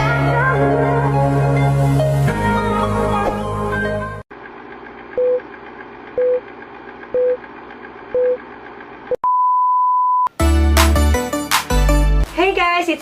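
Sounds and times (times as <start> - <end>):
long higher beep: 9.2 - 10.3
short beeps: 9.2 - 10.3.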